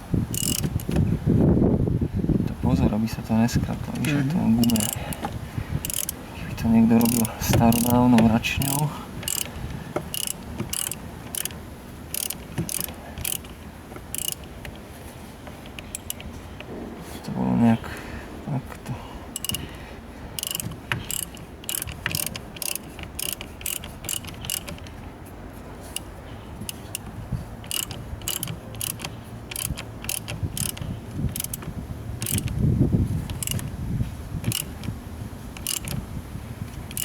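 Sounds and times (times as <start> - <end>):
ratchet wrench clicking: 0.3 - 1.0, 4.0 - 16.7, 19.3 - 19.7, 20.4 - 25.0, 25.8 - 32.6, 33.2 - 33.8, 34.4 - 36.1.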